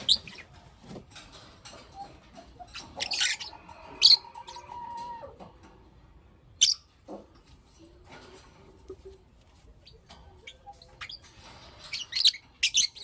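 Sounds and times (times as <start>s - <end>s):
lovebirds chirping: 0.0s - 0.6s, 2.1s - 4.7s, 8.9s - 13.0s.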